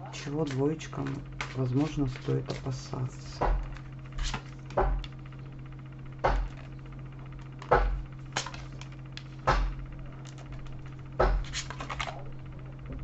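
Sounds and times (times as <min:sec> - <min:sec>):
low hum: 0:00.0 - 0:13.0
cards clicking and rustling: 0:00.2 - 0:03.0, 0:11.4 - 0:12.3.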